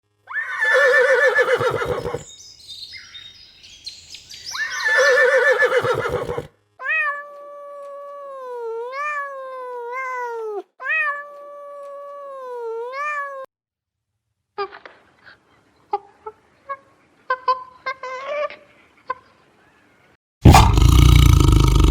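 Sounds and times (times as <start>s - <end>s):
animal bleating calls: 0.3s - 2.3s, 4.5s - 6.5s
long sliding animal calls: 0.3s - 2.3s, 4.4s - 6.5s.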